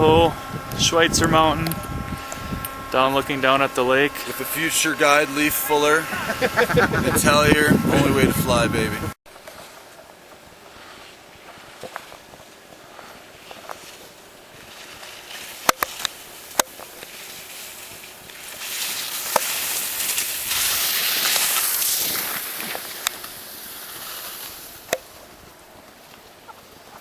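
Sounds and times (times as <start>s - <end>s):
skis sliding over snow: 2.2s - 27.0s
sharp ski clicks: 13.1s - 25.2s.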